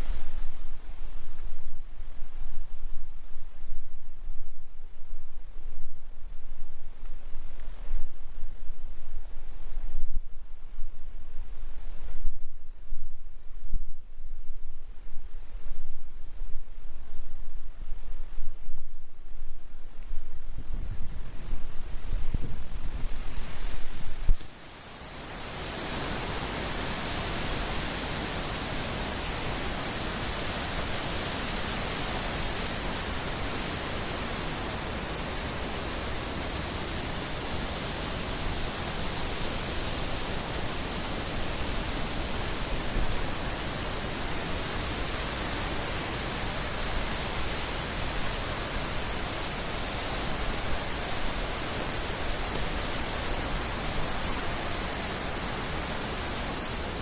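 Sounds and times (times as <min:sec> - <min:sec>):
rushing water: 0:23.1 - 0:57.0.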